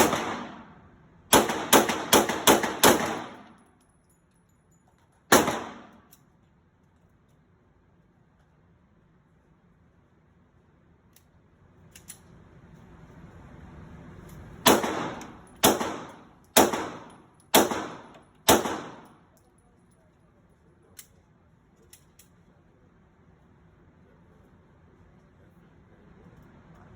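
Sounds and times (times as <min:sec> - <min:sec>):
gunshots with ringing tail: 0:00.0 - 0:03.6, 0:05.3 - 0:06.0, 0:14.6 - 0:19.2.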